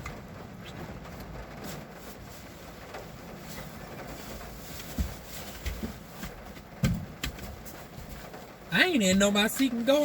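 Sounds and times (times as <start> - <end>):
dull thumps and bumps: 3.6 - 9.7.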